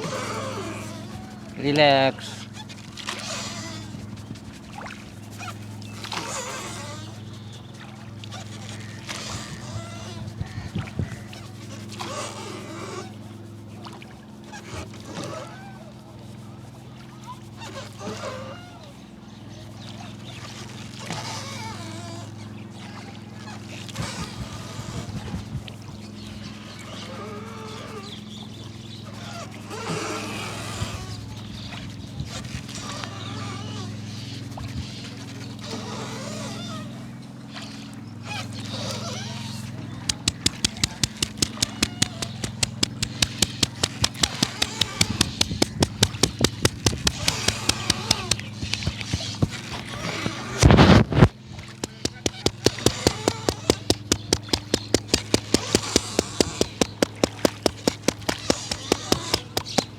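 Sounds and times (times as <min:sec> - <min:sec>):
boat engine droning: 0:00.0 - 0:59.9
wavering high calls: 0:38.4 - 0:50.6
rapid hand slaps on head: 0:40.1 - 0:49.6, 0:51.2 - 0:59.9
short soft thumps: 0:40.1 - 0:49.6.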